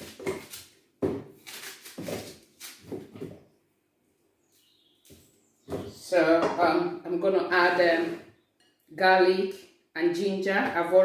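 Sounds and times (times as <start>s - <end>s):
knife cutting onion: 0.0s - 3.0s.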